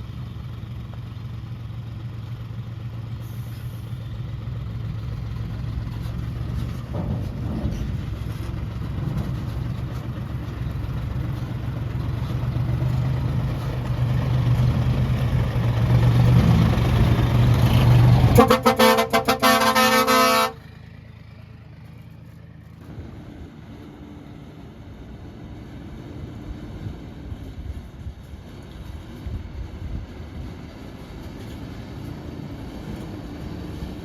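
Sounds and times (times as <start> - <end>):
heavy diesel engine running: 0.0 - 34.0
vehicle horn toots: 18.4 - 20.6.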